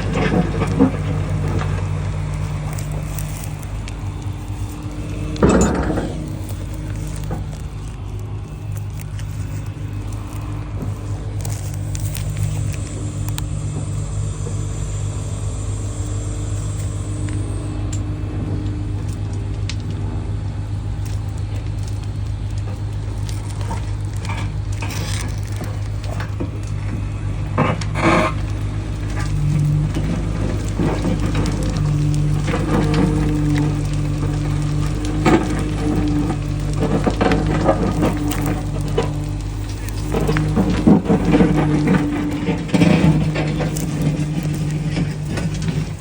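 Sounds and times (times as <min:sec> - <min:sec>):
short knocks and scrapes: 0:00.0 - 0:12.8, 0:22.7 - 0:46.0
excavator diesel engine running: 0:00.0 - 0:46.0.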